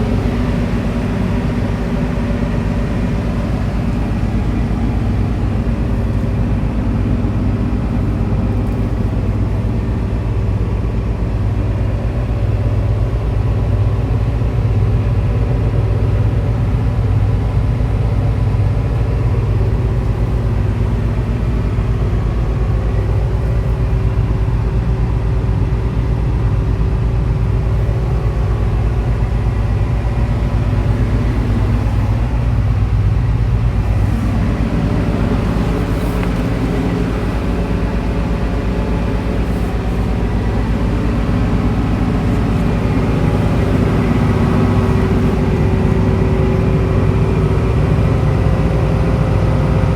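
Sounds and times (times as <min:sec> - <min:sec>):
diesel engine running steadily: 0:00.0 - 0:49.9.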